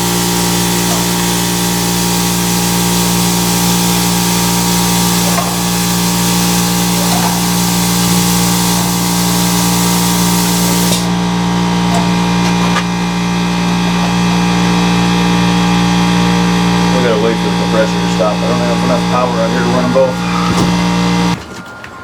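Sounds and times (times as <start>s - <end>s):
loud hiss of air: 0.0s - 17.0s
air compressor humming: 0.0s - 21.4s.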